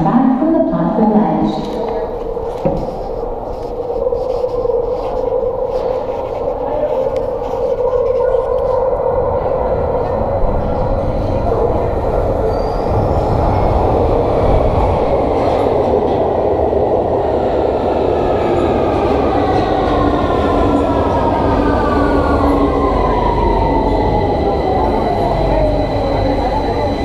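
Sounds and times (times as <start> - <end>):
wheels rumbling on rail: 1.6 - 27.0.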